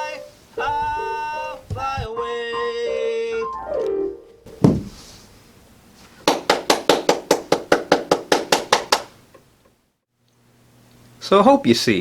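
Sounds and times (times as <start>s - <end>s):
low thump: 4.6s - 5.0s.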